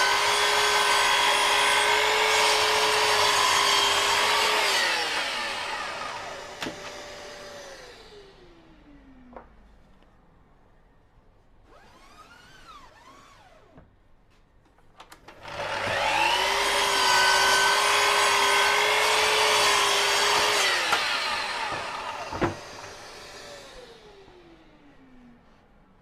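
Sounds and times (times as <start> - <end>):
electric power saw motor: 0.0 - 9.2, 11.7 - 13.8, 15.3 - 24.9.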